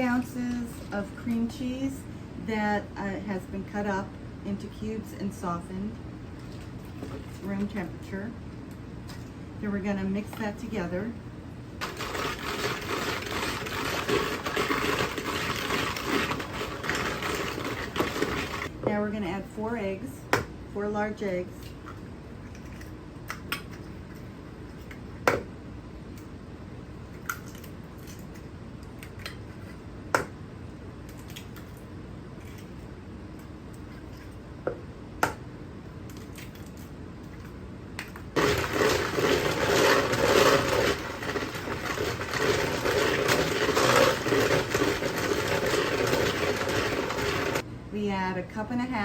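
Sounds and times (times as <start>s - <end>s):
electric mixer running: 11.8s - 18.7s, 38.4s - 47.6s.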